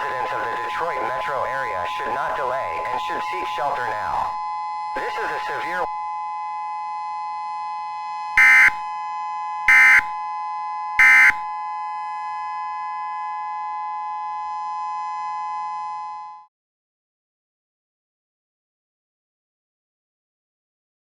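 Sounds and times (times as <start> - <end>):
digital data tone bursts: 8.4 - 8.8
two-tone attention signal: 8.4 - 8.8, 9.7 - 10.1, 11.0 - 11.4.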